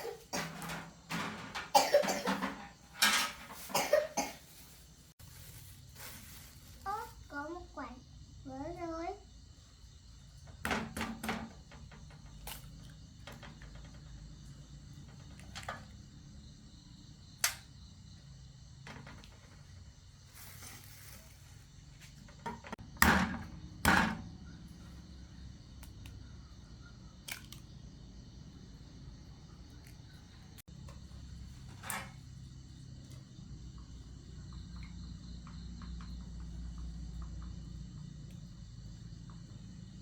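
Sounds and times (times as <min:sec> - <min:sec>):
rustling hiss: 0:03.0 - 0:07.9, 0:19.3 - 0:22.0.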